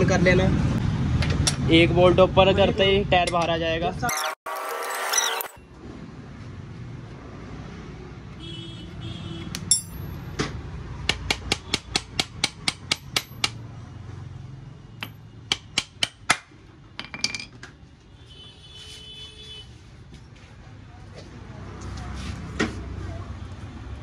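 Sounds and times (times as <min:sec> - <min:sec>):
hammer striking metal axle: 0:09.5 - 0:10.5, 0:11.1 - 0:13.6, 0:15.0 - 0:17.6.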